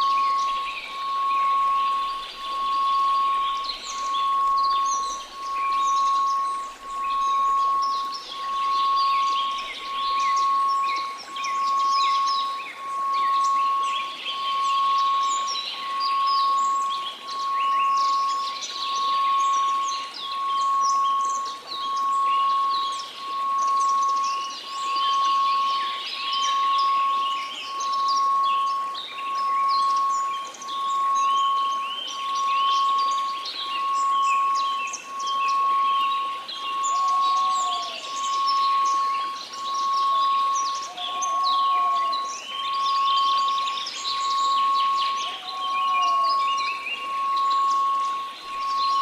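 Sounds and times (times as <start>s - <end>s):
many birds chirping: 0.0s - 49.0s
steady pure tone: 0.0s - 49.0s.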